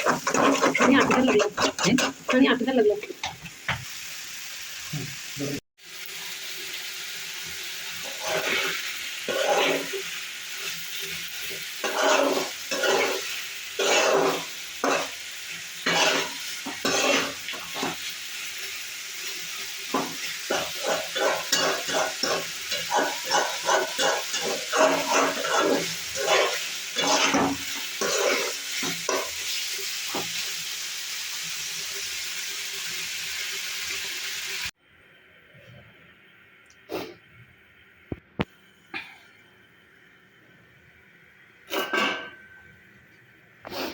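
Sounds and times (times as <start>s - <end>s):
spatula stirring and scraping: 0.0s - 3.2s, 8.0s - 10.1s, 11.4s - 15.2s, 15.8s - 18.1s, 19.9s - 29.6s
food sizzling in a pan: 0.0s - 34.8s.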